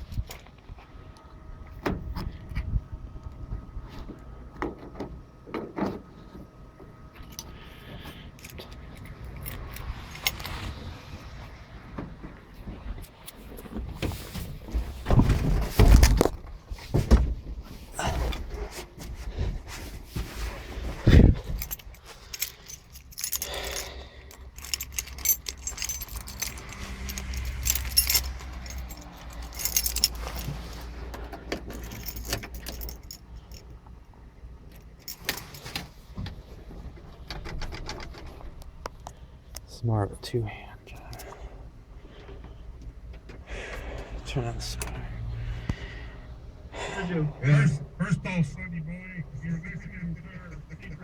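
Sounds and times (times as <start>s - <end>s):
keys jangling: 7.2s - 10.8s, 20.9s - 33.8s, 34.6s - 36.0s
handling clicks and thumps: 15.0s - 17.5s, 20.9s - 33.7s, 34.7s - 35.9s.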